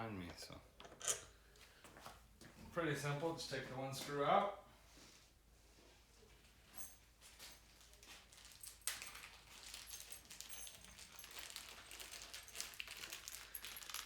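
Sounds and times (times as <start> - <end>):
screw being unscrewed with hand tool: 0.8 - 1.3.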